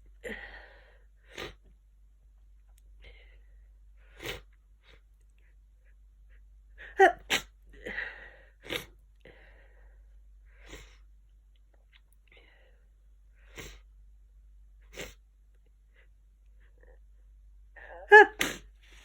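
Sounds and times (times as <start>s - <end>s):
person sneezing: 7.0s - 7.5s, 17.9s - 18.7s.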